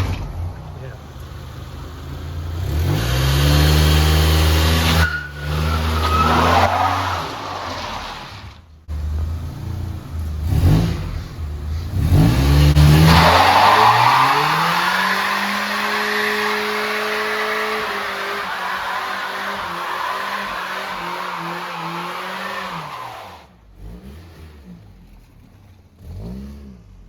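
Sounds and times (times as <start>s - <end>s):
car engine revving: 0.0s - 27.0s
tyres squealing: 4.7s - 8.6s, 12.8s - 23.5s.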